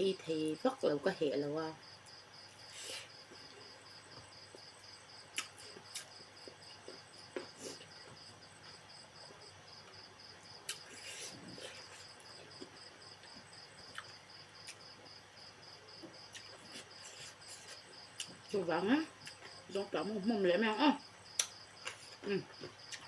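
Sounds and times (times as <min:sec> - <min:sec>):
cricket chirping: 0:00.0 - 0:23.0.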